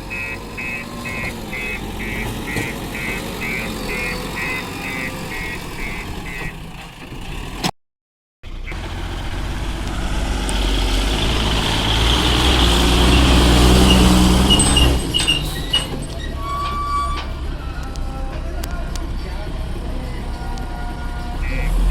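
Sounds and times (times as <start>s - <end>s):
reversing beeper: 0.0s - 6.6s
diesel machinery engine working: 0.0s - 7.6s, 8.5s - 21.9s.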